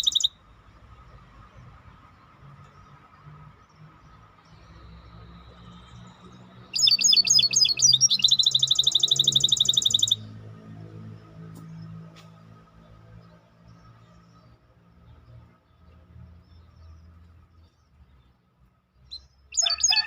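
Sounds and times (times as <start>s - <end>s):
songbird singing trill: 0.0s - 18.4s, 19.0s - 20.0s.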